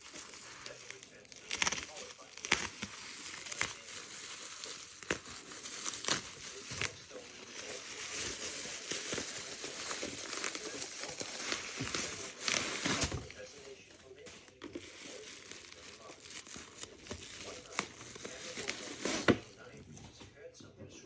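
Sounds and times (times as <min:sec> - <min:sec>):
packaging crinkling and rustling: 0:00.0 - 0:20.3.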